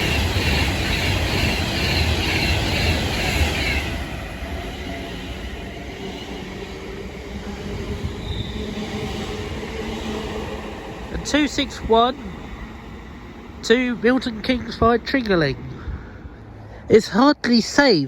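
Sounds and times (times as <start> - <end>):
electric train passing: 0.0 - 17.8.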